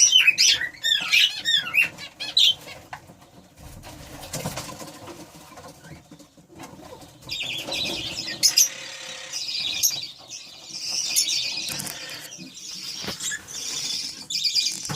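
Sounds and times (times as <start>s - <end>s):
budgerigars chattering and warbling: 0.0s - 2.8s, 7.0s - 14.9s.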